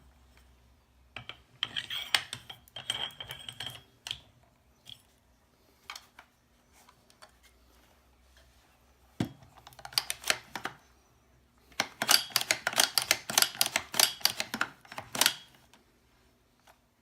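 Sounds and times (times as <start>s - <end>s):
rifle parts clicking and clattering: 11.7s - 15.6s.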